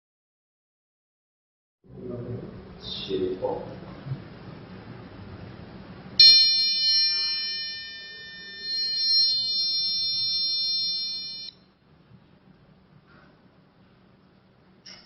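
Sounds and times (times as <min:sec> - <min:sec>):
alarm clock buzzer tone: 0:06.2 - 0:11.6.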